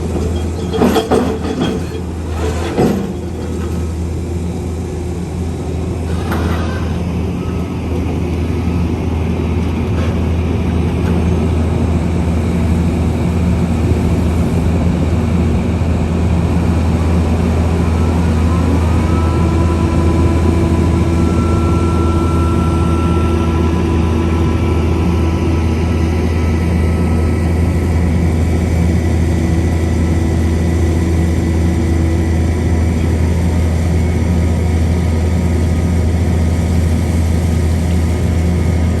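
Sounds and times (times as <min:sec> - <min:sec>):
heavy machine engine droning: 0:00.0 - 0:39.0
high steady whine: 0:11.6 - 0:39.0.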